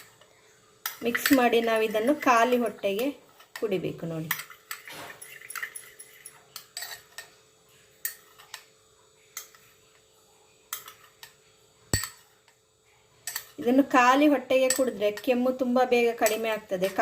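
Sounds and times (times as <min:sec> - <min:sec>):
spoon clinking against bowl: 0:14.6 - 0:15.4.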